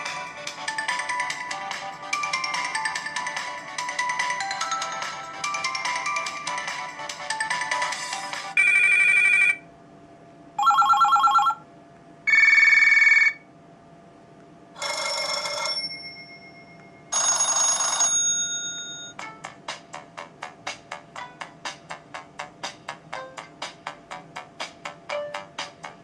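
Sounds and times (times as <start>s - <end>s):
phone ringtone melody: 0.0s - 9.6s, 10.6s - 11.6s, 12.3s - 13.4s, 14.8s - 16.0s, 17.1s - 19.3s
phone beeps and chimes: 10.6s - 11.6s.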